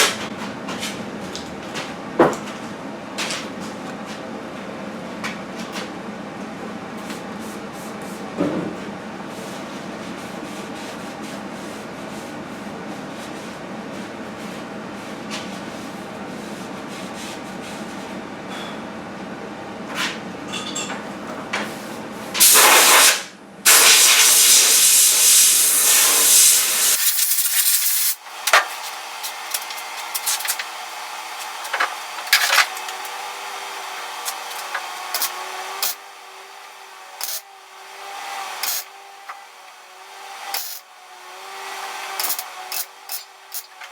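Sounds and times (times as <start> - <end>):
loud hissing: 23.7 - 28.2.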